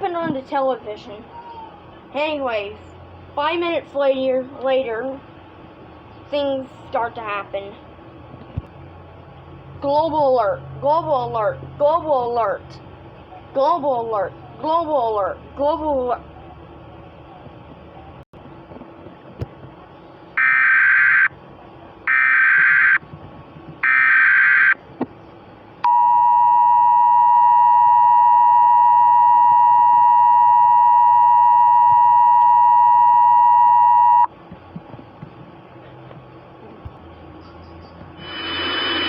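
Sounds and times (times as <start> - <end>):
two-tone attention signal: 25.9 - 34.3
buzzing data bursts: 38.2 - 39.0.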